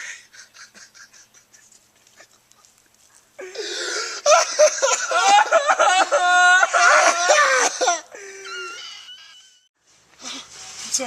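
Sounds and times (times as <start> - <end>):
person gasping breaths: 3.4 - 4.3, 7.4 - 8.5
person wailing: 3.4 - 8.9.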